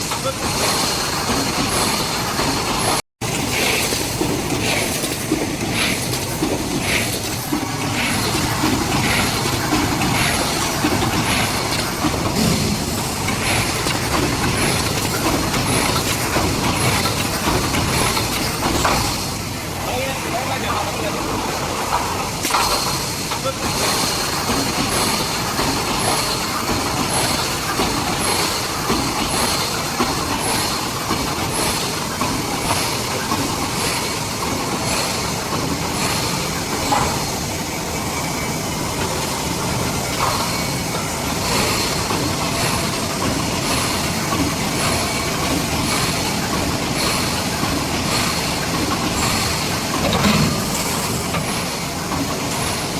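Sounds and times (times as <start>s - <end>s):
welding machine mechanical clatter: 0.0s - 52.9s.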